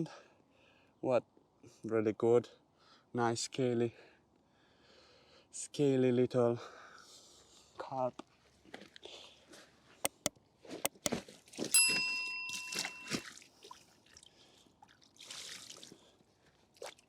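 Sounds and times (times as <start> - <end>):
gear being handled clicks: 10.1 - 10.3, 10.9 - 11.2
struck metallic ring: 11.8 - 13.2.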